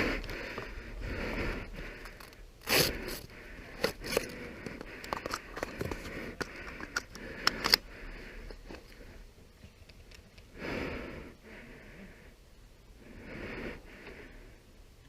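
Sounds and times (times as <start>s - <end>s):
loud breath: 0.0s - 9.2s, 10.5s - 12.4s, 13.0s - 14.7s
sharp clicks and crackles: 2.0s - 7.9s.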